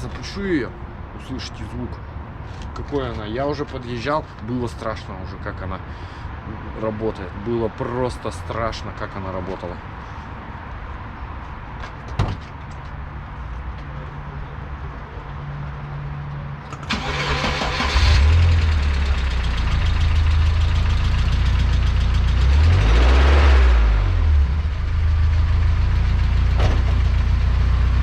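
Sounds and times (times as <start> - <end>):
starter cranking engine: 16.7 - 20.2.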